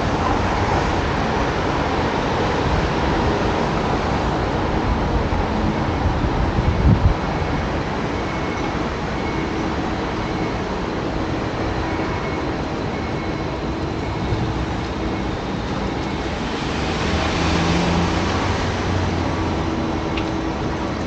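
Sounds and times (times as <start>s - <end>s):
road traffic noise: 0.0s - 21.0s
vehicle passing: 15.2s - 21.0s.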